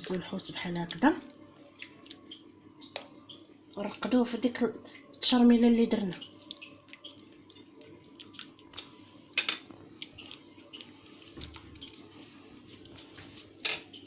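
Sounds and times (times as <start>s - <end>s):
wet squelching: 6.1s - 9.1s.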